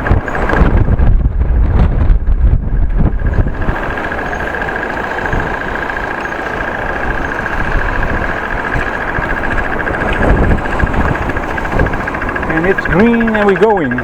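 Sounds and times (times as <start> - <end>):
road traffic: 0.0 - 1.0, 2.6 - 14.0
wind buffeting microphone: 0.0 - 14.0
high-pitched pulsing tone: 2.8 - 14.0.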